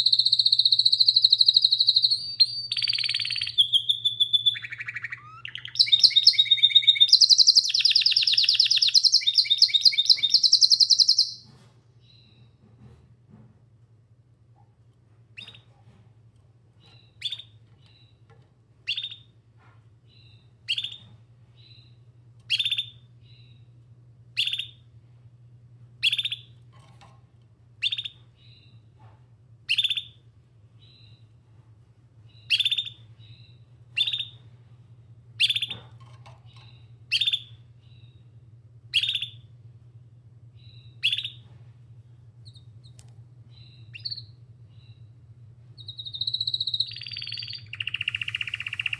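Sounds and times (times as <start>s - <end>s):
canary calling: 0.0s - 11.4s, 43.6s - 45.0s, 45.8s - 48.9s.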